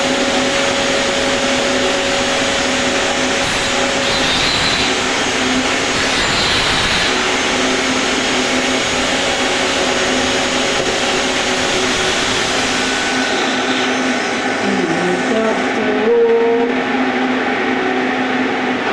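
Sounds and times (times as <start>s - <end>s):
angle grinder on metal: 1.3s - 16.0s.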